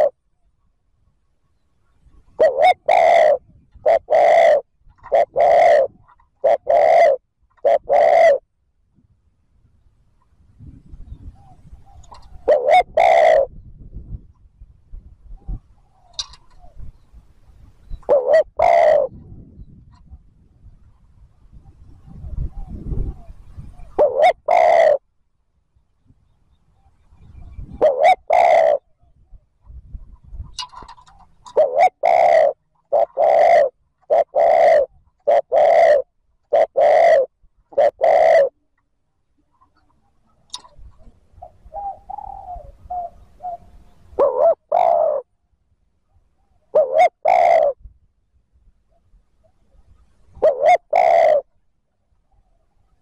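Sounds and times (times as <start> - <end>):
dove cooing: 2.3 - 8.5, 11.1 - 13.7, 17.8 - 20.2, 21.5 - 25.0, 26.8 - 29.4, 30.3 - 38.7, 39.5 - 45.3, 46.4 - 47.9, 49.4 - 51.6.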